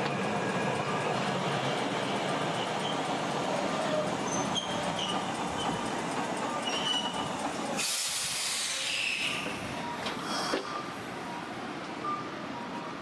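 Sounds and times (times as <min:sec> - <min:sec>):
tram rumbling on rails: 0:00.0 - 0:13.0
air release hiss: 0:07.8 - 0:09.4.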